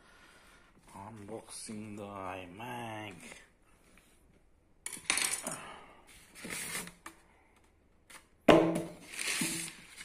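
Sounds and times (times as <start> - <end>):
cardboard packaging rustling: 9.0 - 10.0.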